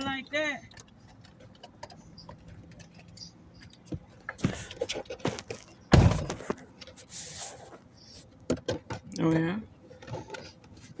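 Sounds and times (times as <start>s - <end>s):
loud thunk: 5.9s - 6.5s.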